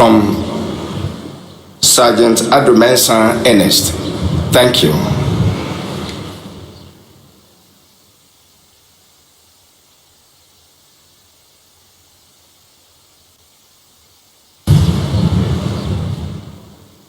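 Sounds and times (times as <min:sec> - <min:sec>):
low hum: 0:00.0 - 0:07.4, 0:14.7 - 0:17.0
faint steady hiss: 0:00.0 - 0:17.0.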